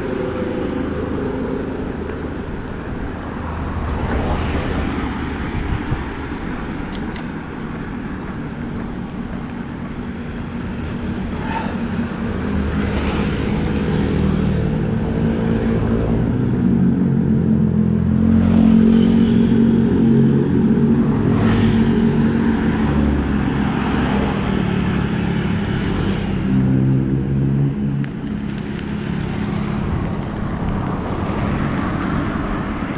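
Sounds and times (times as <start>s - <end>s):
bicycle tyres rolling on road: 0.0s - 14.9s, 27.4s - 32.9s.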